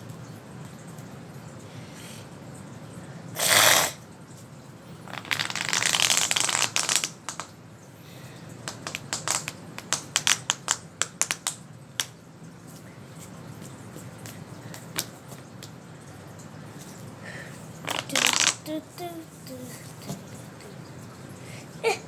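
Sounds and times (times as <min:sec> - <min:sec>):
fidget toy clicks: 0:05.1 - 0:07.5, 0:08.7 - 0:12.1, 0:17.9 - 0:18.7
plastic fidget toy crackling: 0:05.1 - 0:07.6, 0:08.6 - 0:12.2, 0:17.8 - 0:19.1.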